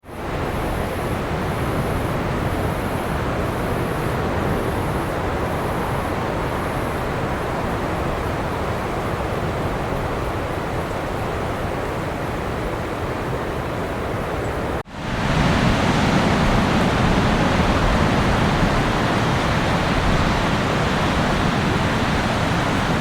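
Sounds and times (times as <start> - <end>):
ocean waves breaking: 14.8 - 23.0.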